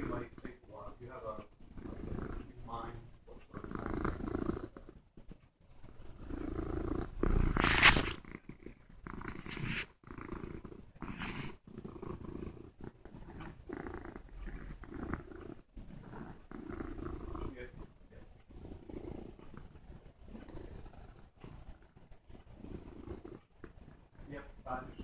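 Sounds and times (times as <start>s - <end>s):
cat purring: 0.0s - 25.0s
cat rubbing against phone: 7.5s - 8.2s, 9.3s - 9.9s, 11.0s - 11.6s.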